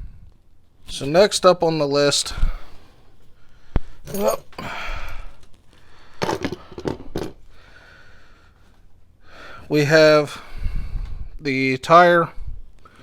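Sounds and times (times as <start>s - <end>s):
plastic tool box knocks and clunks: 6.2s - 7.4s.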